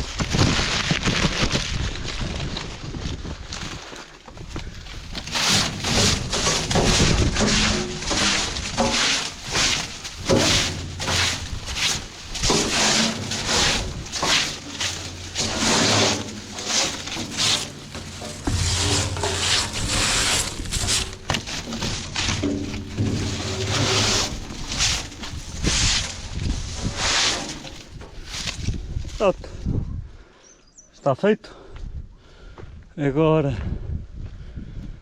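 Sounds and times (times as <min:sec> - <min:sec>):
scraping strokes: 0:05.0 - 0:29.0.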